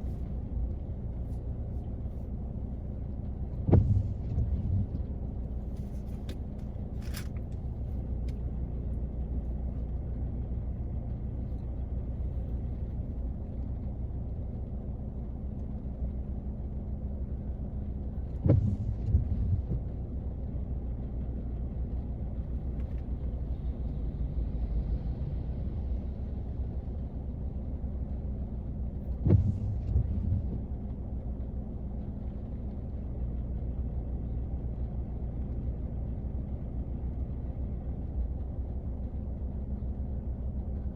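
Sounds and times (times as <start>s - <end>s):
rain on a car roof: 0.0s - 40.9s
thunder crack and rumble: 18.4s - 20.2s, 29.1s - 31.5s.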